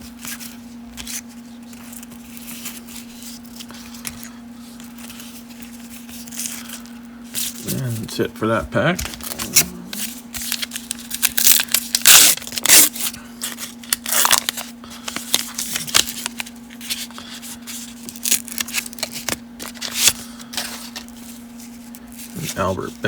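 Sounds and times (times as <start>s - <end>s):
cards rustling and flicking: 0.2s - 8.1s, 9.0s - 23.0s
wrapper crinkling and tearing: 9.1s - 22.6s.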